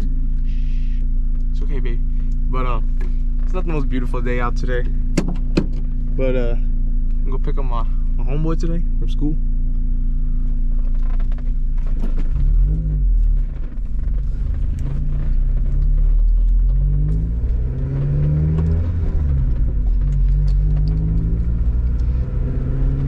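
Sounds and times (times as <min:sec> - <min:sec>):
car engine accelerating through gears: 0:09.7 - 0:23.0.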